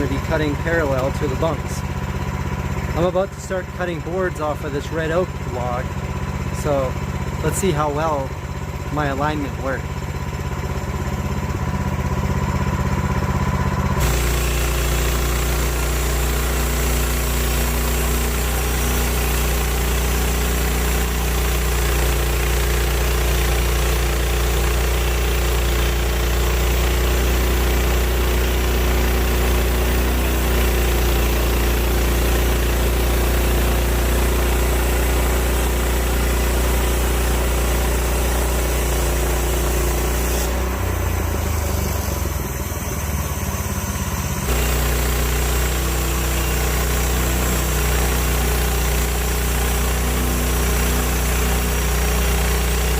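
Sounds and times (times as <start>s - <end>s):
sawmill engine running: 0.0s - 52.9s
band blade sawing log: 14.0s - 40.7s, 44.5s - 52.9s.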